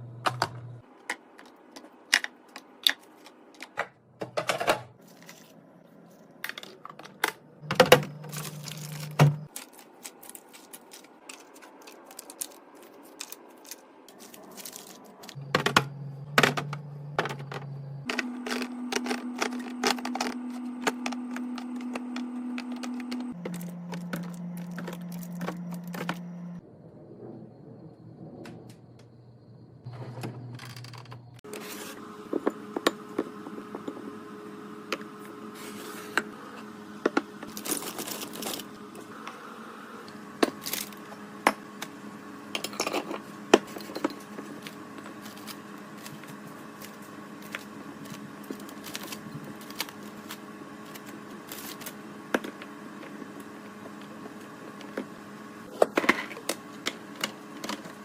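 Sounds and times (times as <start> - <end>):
fridge hum: 0.0 - 58.0
items clicking and clinking: 6.4 - 26.3.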